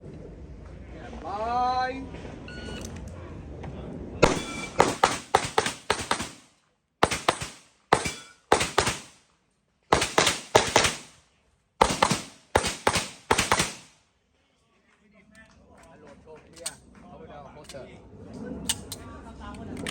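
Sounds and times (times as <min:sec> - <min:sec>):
rapid handgun shots: 0:04.2 - 0:09.2, 0:09.9 - 0:11.2, 0:11.8 - 0:14.0.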